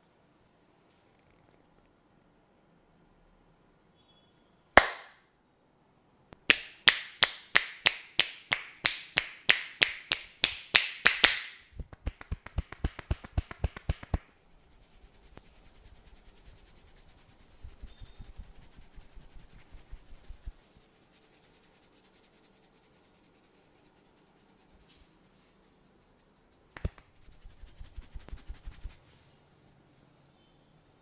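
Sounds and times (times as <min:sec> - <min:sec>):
hands slapping skin: 0:04.8 - 0:05.2, 0:06.4 - 0:14.3, 0:17.6 - 0:20.5, 0:26.7 - 0:29.0
soft rubbing: 0:11.8 - 0:30.5.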